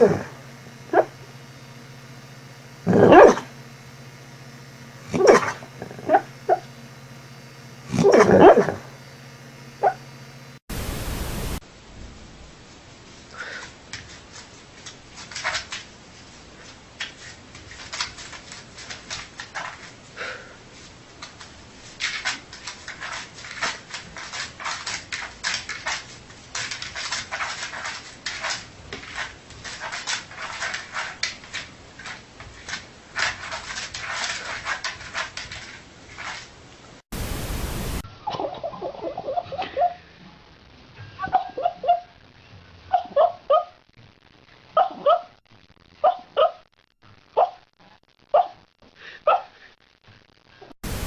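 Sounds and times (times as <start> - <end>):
dog whimpering: 0.0 - 1.1, 2.9 - 3.4, 5.1 - 6.7, 7.9 - 8.8, 41.2 - 42.1.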